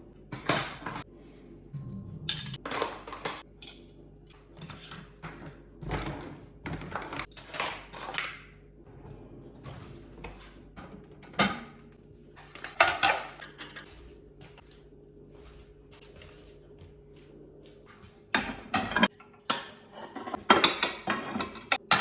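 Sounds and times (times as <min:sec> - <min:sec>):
faint low hum: 0:00.0 - 0:05.1
dishes and cutlery clinking: 0:00.4 - 0:01.1, 0:01.8 - 0:08.5, 0:12.5 - 0:14.0, 0:18.3 - 0:22.0
dishes clattering: 0:00.4 - 0:01.1, 0:01.8 - 0:03.9, 0:10.2 - 0:11.9, 0:12.5 - 0:14.0, 0:18.3 - 0:22.0.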